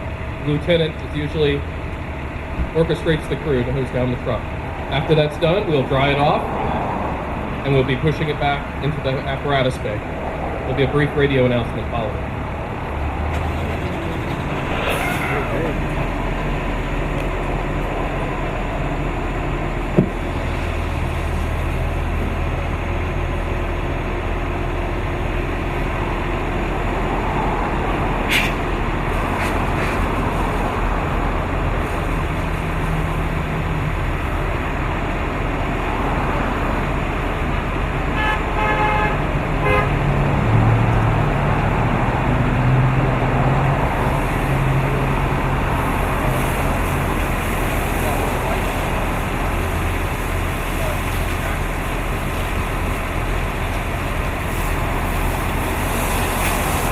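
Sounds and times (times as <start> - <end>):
fire truck engine idling: 0.0 - 56.9
water spraying from fire hoses: 0.0 - 56.9.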